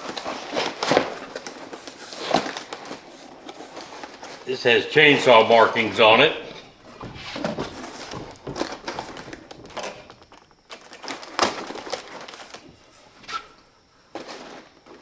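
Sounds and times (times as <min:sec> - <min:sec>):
packaging rustling: 0:07.4 - 0:12.6.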